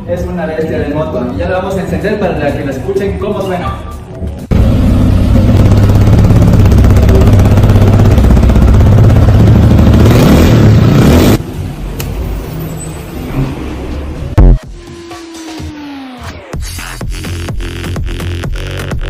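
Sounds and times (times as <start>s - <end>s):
motorcycle engine running: 4.4s - 11.4s.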